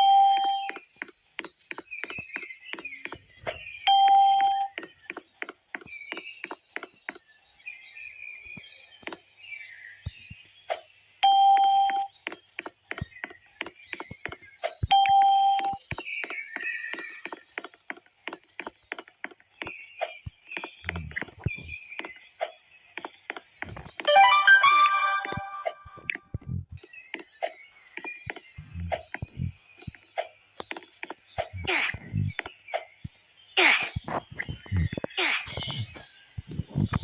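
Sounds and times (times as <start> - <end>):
chirpy sound effects: 23.8 - 26.8.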